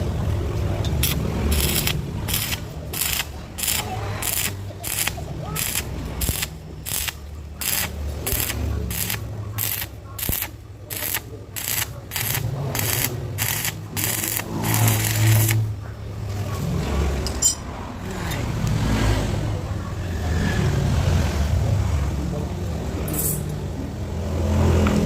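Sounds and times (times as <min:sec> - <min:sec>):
rhythmic scraping strokes: 0:01.0 - 0:15.8.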